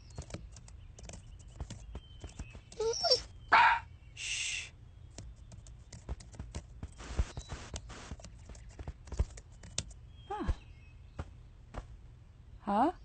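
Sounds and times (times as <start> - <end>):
dog whining: 2.8 - 3.6.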